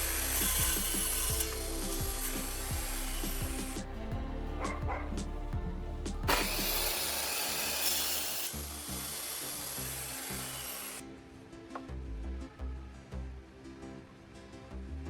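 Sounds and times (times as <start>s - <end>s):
circular saw cutting wood: 0.0s - 11.0s
background music: 0.0s - 15.0s.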